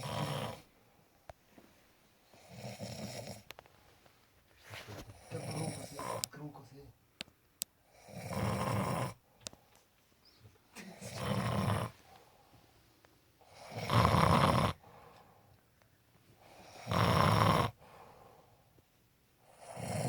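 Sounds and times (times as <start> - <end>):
person snoring: 0.0 - 0.7, 5.2 - 6.3, 8.0 - 9.2, 10.8 - 12.0, 13.5 - 14.9, 16.6 - 17.8, 19.6 - 20.0.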